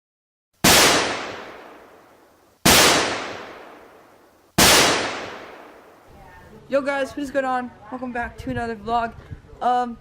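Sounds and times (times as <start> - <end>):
loud gunshot-like bangs with echo: 0.6 - 2.0, 2.7 - 4.0, 4.6 - 5.9.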